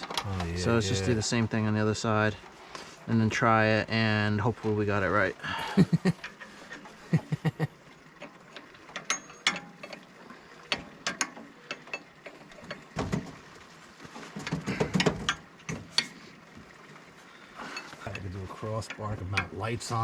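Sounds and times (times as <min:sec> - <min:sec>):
metal clanks: 0:08.6 - 0:13.5
metal tools clinking on fittings: 0:09.0 - 0:10.0.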